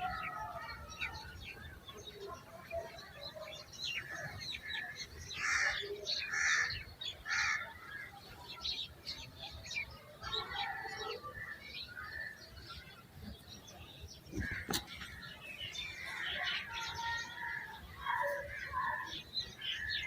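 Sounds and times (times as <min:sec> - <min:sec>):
birds chirping: 0:00.0 - 0:20.0
harsh bird calls: 0:00.0 - 0:20.0.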